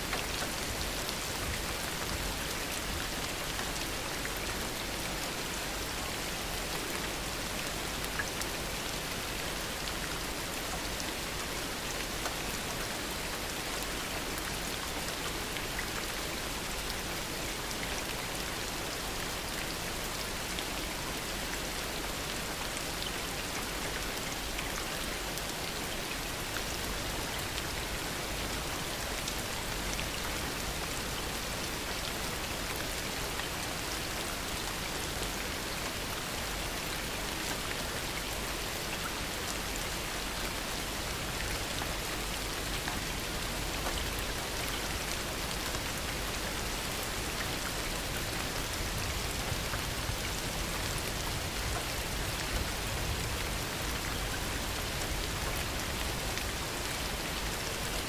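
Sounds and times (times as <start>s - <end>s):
heavy rain falling: 23.3s - 58.0s.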